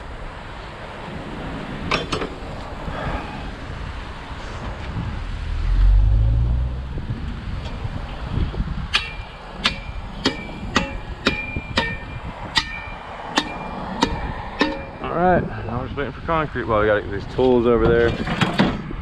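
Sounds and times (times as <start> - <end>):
outdoor noise: 0.0 - 19.0
vehicle engine rumble: 0.0 - 19.0
short ringing strikes: 9.0 - 15.1.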